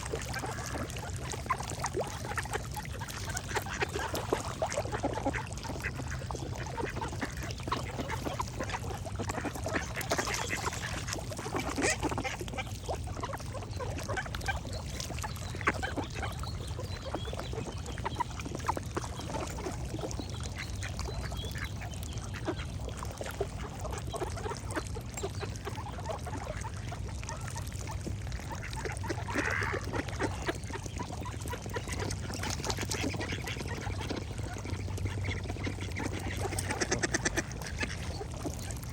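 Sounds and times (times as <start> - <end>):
ducks quacking: 0.0 - 38.7
birds singing faintly: 11.8 - 38.9.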